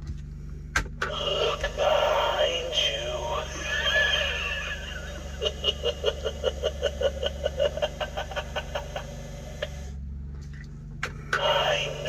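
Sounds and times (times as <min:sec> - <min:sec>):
low steady hum: 0:00.0 - 0:12.0
recorded cackling laugh: 0:01.0 - 0:10.0.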